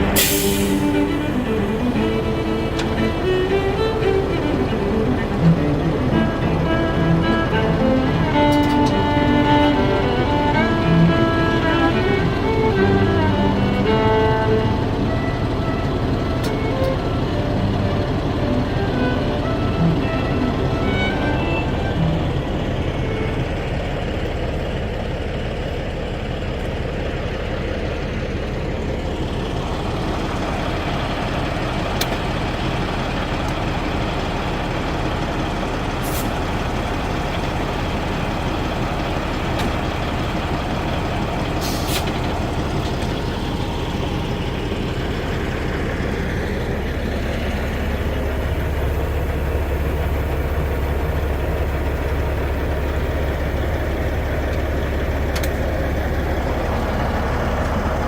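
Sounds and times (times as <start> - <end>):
diesel truck engine running: 0.0 - 58.0
short high hisses: 0.2 - 1.0, 41.6 - 42.0.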